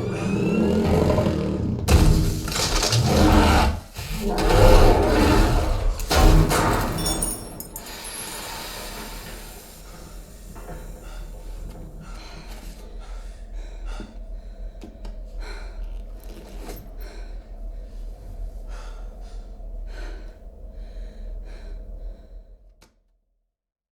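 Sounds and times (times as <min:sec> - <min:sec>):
deep bass rumble: 0:00.0 - 0:07.7
heavy gasping breaths: 0:07.0 - 0:22.4.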